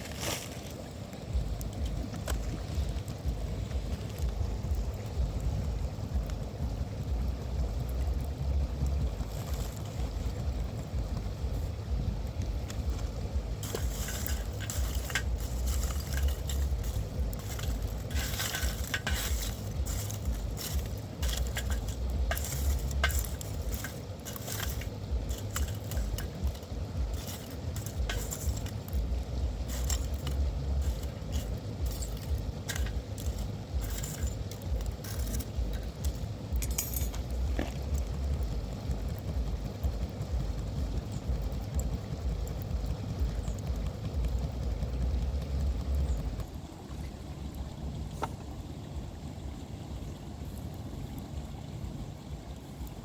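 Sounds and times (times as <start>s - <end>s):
low rumble: 0.0s - 53.0s
metal kitchen utensils clinking: 13.6s - 29.0s, 29.7s - 37.3s.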